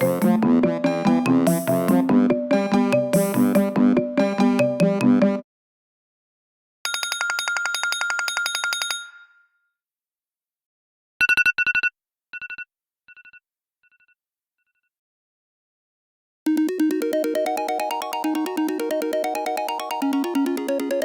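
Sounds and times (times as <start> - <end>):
rapid trilling phone ringtone: 6.9 - 9.4.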